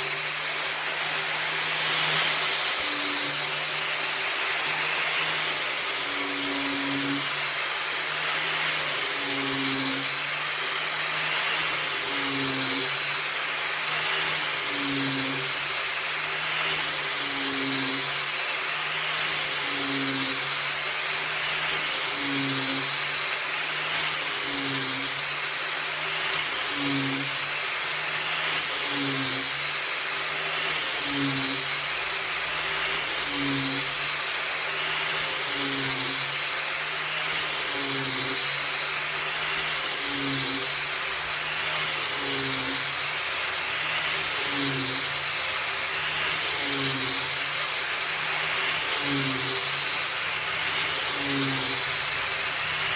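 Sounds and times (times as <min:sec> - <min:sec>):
angle grinder grinding metal blade: 0:00.0 - 0:52.9.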